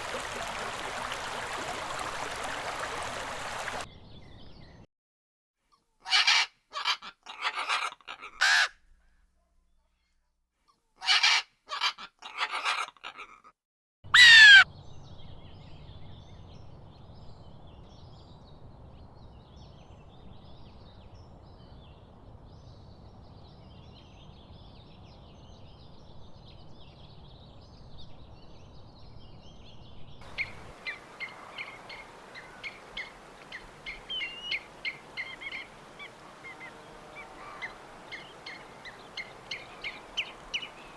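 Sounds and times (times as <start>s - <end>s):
harsh bird calls: 0.0s - 3.9s, 14.2s - 14.7s, 30.2s - 40.9s
distant bird chatter: 0.0s - 4.4s, 30.2s - 40.9s.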